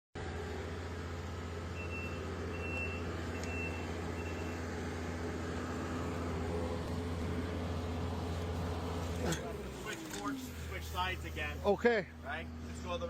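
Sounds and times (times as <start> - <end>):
diesel engine running: 0.2 - 13.0
backup alarm beeping: 1.8 - 4.6.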